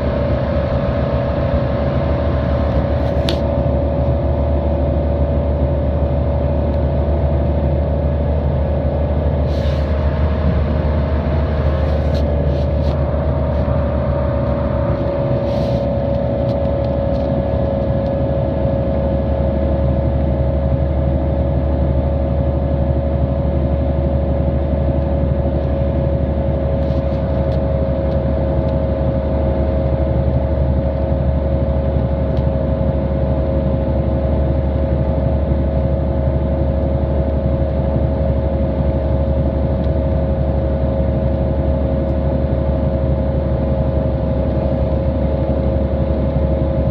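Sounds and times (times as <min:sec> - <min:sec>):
high whine: 0:00.0 - 0:18.3
bus engine drone: 0:00.0 - 0:46.9.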